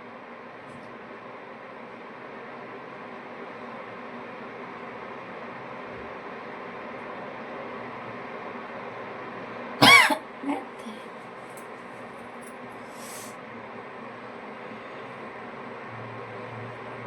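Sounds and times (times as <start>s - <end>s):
woman coughing: 9.8s - 11.0s
breathy hiss: 12.9s - 13.4s.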